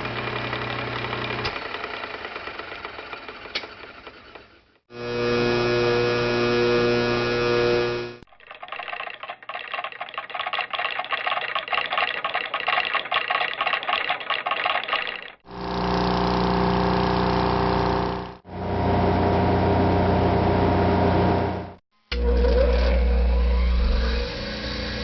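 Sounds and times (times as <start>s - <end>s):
electric motor hum: 4.9s - 14.0s, 14.7s - 25.0s
pulsing mechanical clatter: 8.2s - 18.4s.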